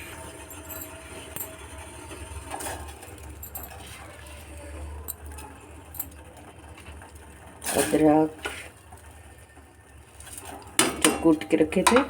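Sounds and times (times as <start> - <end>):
steady low hum: 0.0 - 6.1
clinks and taps on cooking pot: 10.8 - 12.0.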